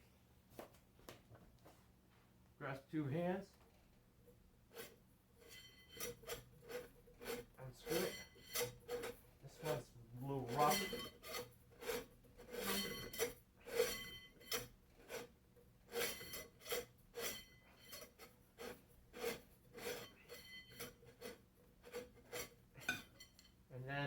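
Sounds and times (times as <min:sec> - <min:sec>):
threads scraping: 0:04.7 - 0:23.4.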